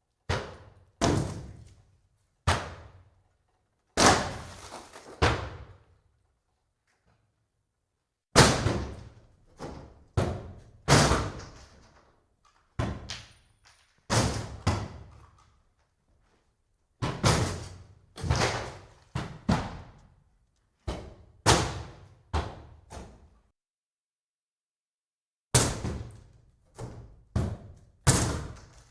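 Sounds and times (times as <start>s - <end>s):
axe chopping wood: 25.6s - 28.8s.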